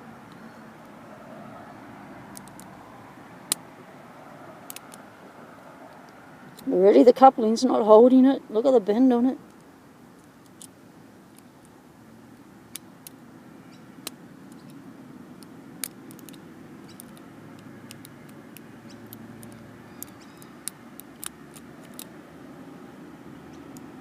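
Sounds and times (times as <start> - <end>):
lock pick metallic clicks: 2.3 - 2.7, 4.7 - 5.0, 15.4 - 22.1.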